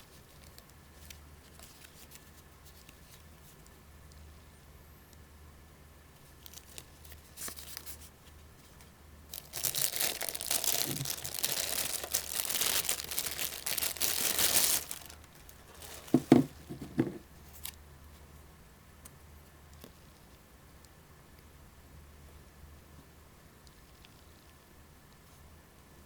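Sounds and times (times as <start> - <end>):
plastic packaging crinkling and tearing: 6.4 - 8.0, 9.3 - 16.4.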